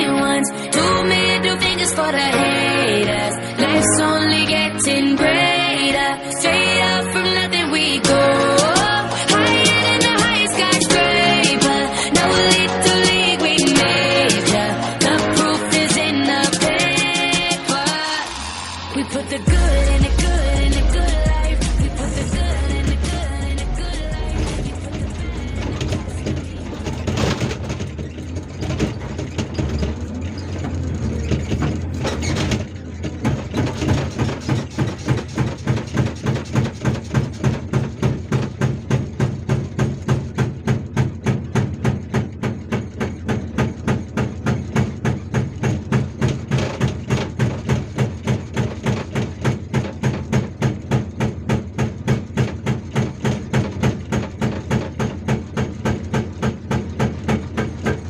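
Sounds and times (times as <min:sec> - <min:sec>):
intro music: 0:00.0 - 0:27.4
diesel engine running: 0:00.0 - 0:58.0
hydraulic breaker hammering rock: 0:19.5 - 0:58.0.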